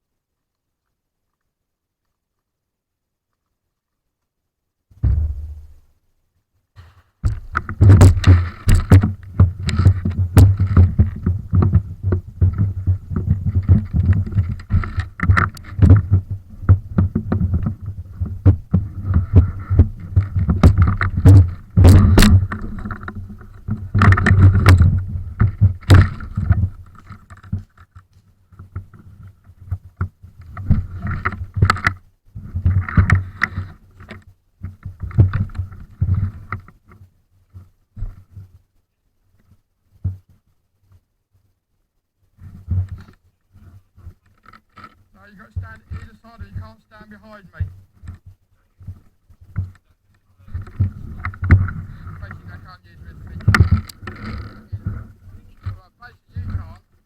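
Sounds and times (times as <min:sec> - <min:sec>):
low rumbling on microphone: 0:04.9 - 0:06.0, 0:07.2 - 0:27.0, 0:50.3 - 0:55.7
sharp clicks and knocks: 0:06.8 - 0:29.0, 0:44.1 - 0:56.8.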